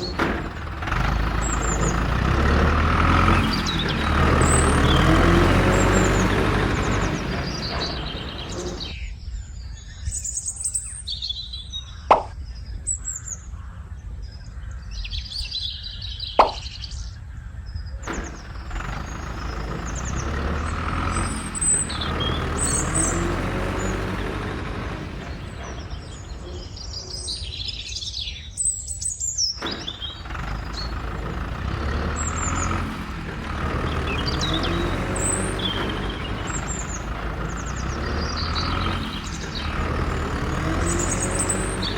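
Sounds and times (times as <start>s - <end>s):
low engine-like rumble: 0.0s - 9.0s, 18.0s - 28.0s, 29.6s - 41.9s
small birds chirping: 0.0s - 41.9s
sharp clicks: 12.1s - 12.4s, 16.4s - 16.7s.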